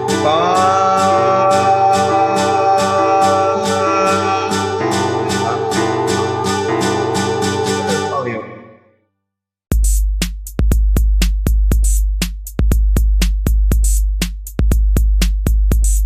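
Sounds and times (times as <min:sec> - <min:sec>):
repeating low bass pattern: 0:00.0 - 0:08.6.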